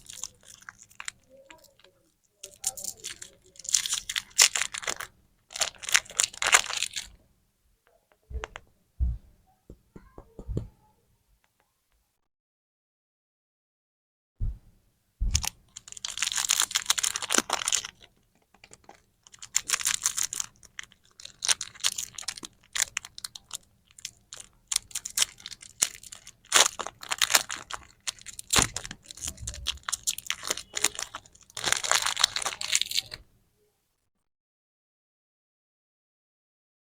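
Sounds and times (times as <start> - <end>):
plastic packaging crinkling: 0.0 - 7.2, 15.3 - 33.3.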